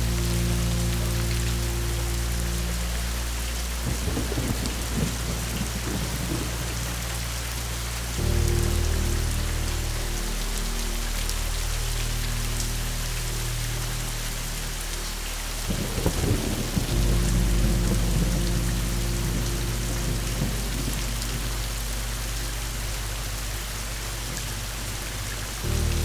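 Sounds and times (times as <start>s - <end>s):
steady rain: 0.0s - 26.0s
thunder clap and rumble: 1.7s - 10.7s, 15.5s - 26.0s.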